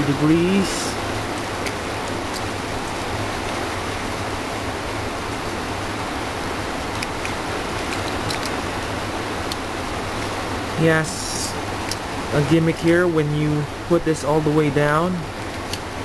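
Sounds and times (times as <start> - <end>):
background hiss: 0.0 - 16.0
plastic toy parts clicking: 7.9 - 8.6.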